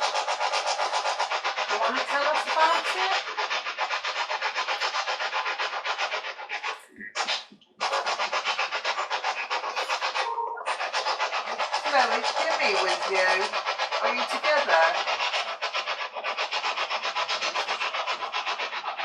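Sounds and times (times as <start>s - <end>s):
snatches of radio broadcast: 6.6s - 8.2s.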